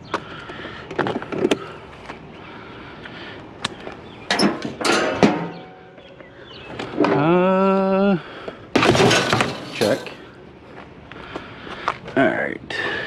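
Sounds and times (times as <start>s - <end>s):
hand tools clattering: 4.3s - 6.0s, 8.8s - 10.2s
metal clanks: 4.3s - 6.1s, 8.8s - 10.2s.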